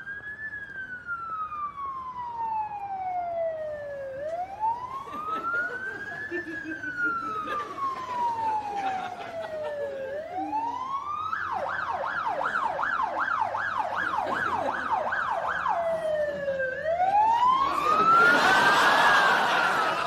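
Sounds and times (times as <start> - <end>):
emergency vehicle siren: 0.0 - 20.0.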